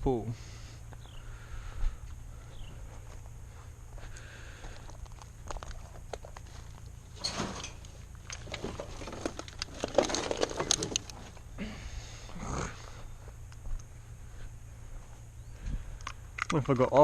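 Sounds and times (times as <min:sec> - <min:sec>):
rustling handling noise: 0:05.0 - 0:11.5.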